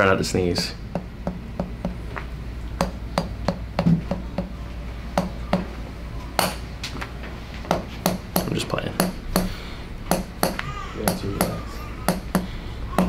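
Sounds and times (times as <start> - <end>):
mallet tapping knocks: 0.9 - 2.0, 7.7 - 9.5, 10.1 - 13.0.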